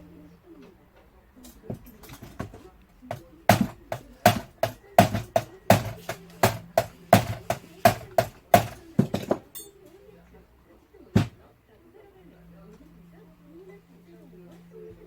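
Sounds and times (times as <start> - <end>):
hammer tapping on brass: 1.7 - 9.7.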